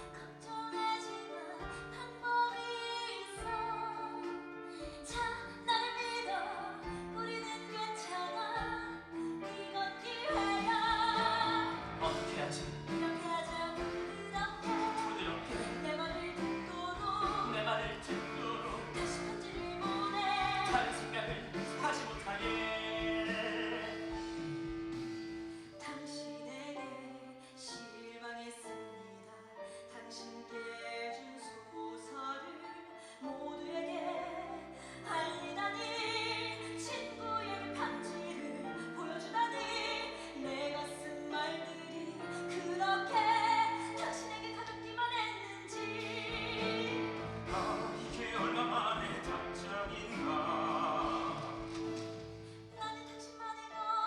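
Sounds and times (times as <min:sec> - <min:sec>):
instrumental accompaniment: 0:00.0 - 0:26.5, 0:33.9 - 0:53.7
person singing with vibrato: 0:09.5 - 0:24.4, 0:35.0 - 0:52.0.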